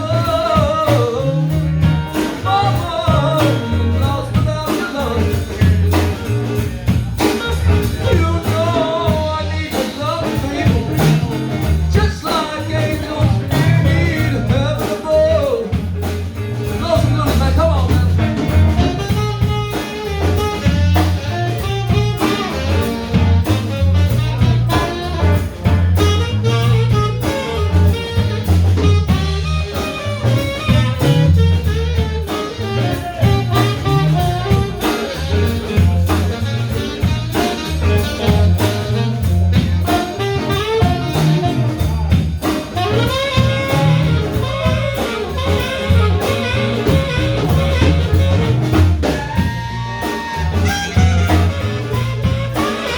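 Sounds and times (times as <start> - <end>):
blues band playing: 0.0 - 52.9
lead instrument solo: 0.0 - 52.9.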